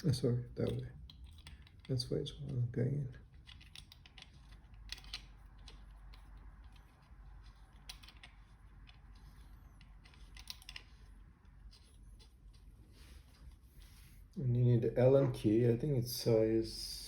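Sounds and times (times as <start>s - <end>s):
low steady hum: 0.0s - 17.0s
small parts clicking and tapping: 0.1s - 2.6s, 3.2s - 12.4s.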